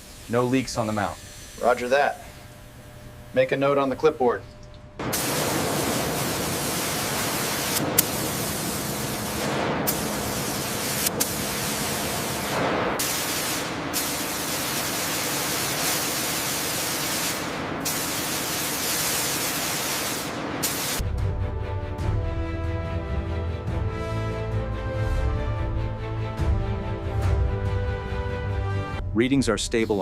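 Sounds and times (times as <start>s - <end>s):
high-pressure spray hissing: 0.0s - 2.0s, 5.0s - 21.0s.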